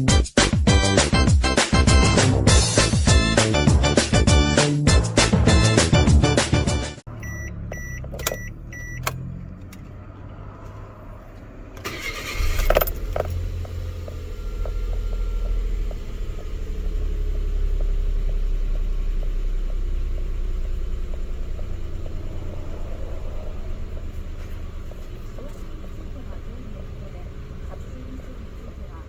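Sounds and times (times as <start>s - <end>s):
car engine starting and idling: 5.2s - 29.0s
short electronic beeps: 7.1s - 9.1s.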